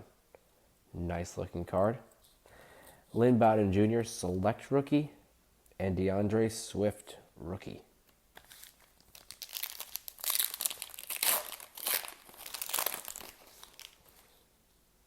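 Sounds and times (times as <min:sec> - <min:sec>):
wrapper tearing and crinkling: 0:08.4 - 0:14.4.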